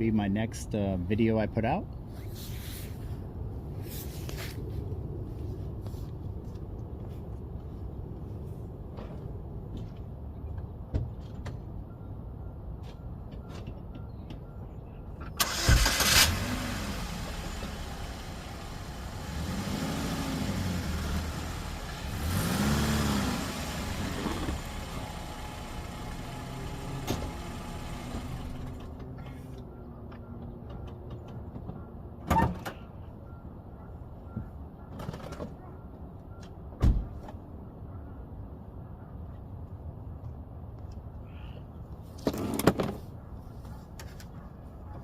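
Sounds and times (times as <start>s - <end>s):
car engine starting and revving: 15.4s - 29.0s.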